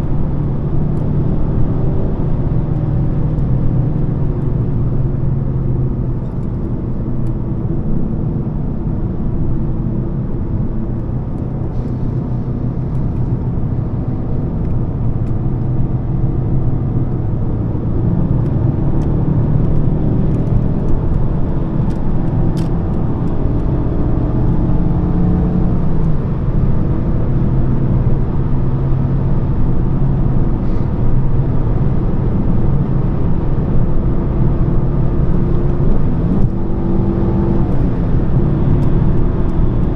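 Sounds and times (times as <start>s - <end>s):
car engine cruising: 0.0s - 39.9s
tyre and road noise: 11.0s - 39.9s.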